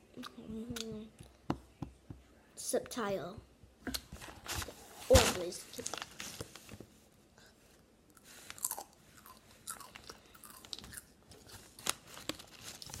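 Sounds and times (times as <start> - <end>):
person chewing crunchy chips: 8.2 - 13.0.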